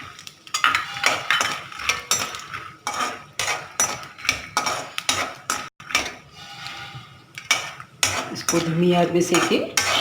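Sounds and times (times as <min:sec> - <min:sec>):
metal spatula scraping pan: 0:00.0 - 0:10.0.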